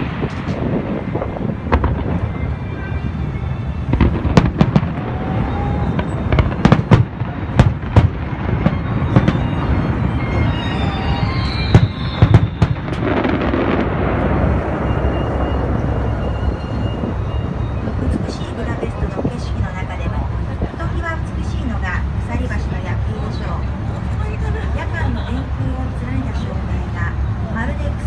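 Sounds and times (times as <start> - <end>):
fireworks bangs: 0.0 - 20.2
fireworks rumble: 0.0 - 28.0
falling firework whistle: 0.2 - 18.4.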